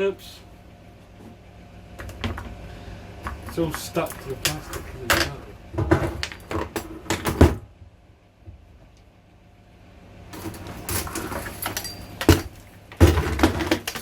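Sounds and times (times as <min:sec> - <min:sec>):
scraping on heater parts: 0:03.2 - 0:07.3, 0:10.4 - 0:14.0
knocks on heater parts: 0:12.2 - 0:14.0.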